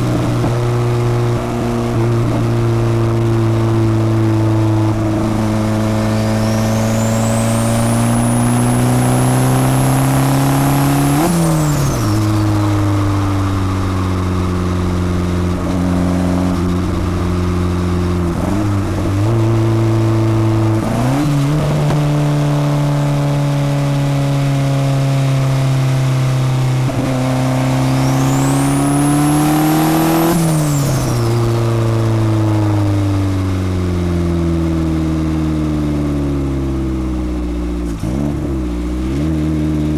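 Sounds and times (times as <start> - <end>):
car engine pulling under load: 0.0 - 39.8
turbo flutter: 4.9 - 15.0
turbo whistle: 5.1 - 15.0, 27.0 - 32.0.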